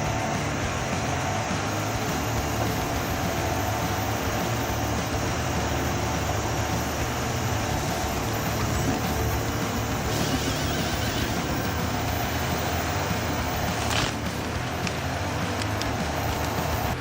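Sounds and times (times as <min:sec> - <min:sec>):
forestry machine engine drone: 0:00.0 - 0:17.0.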